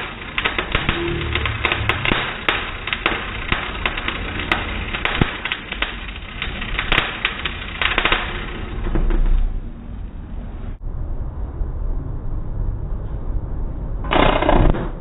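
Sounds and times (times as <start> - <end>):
spatter pops: 0.0 - 8.4
arc welding crackling: 0.0 - 9.6.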